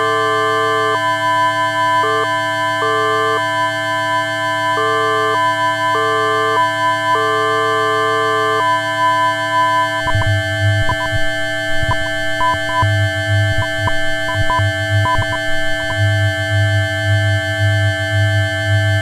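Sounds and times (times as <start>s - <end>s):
low synth bass note with clicks: 9.8s - 16.3s
synthesizer chord: 9.9s - 16.2s.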